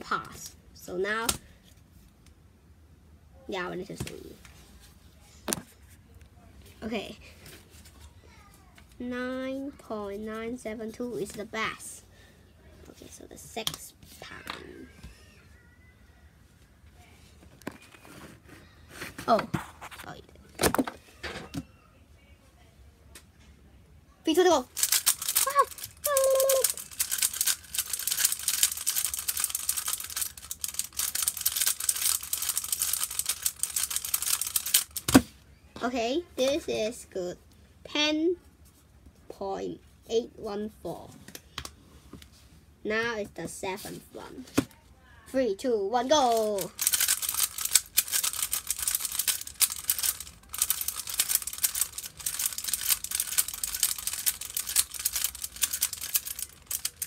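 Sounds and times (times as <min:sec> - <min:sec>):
puzzle cube clicking and rattling: 0:24.6 - 0:35.2, 0:46.1 - 0:57.0.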